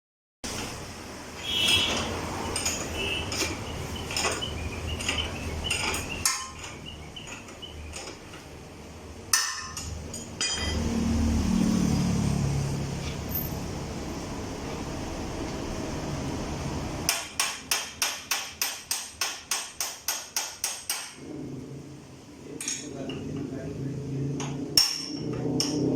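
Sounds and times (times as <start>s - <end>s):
hammer striking metal: 9.3s - 11.0s, 17.0s - 21.2s, 24.4s - 25.9s.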